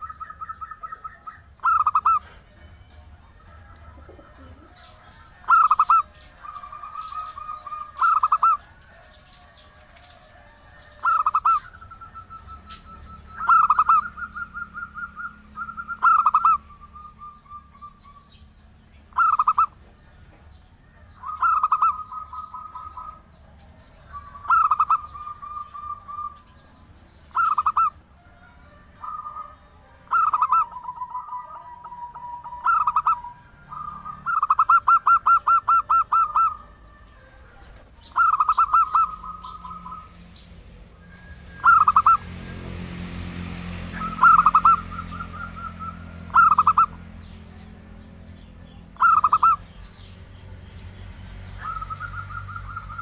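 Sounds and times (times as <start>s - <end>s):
dove cooing: 0.0s - 18.2s, 19.1s - 19.8s, 20.8s - 23.3s, 24.1s - 26.6s, 27.3s - 40.2s, 41.5s - 42.3s, 44.0s - 47.1s, 49.0s - 49.7s.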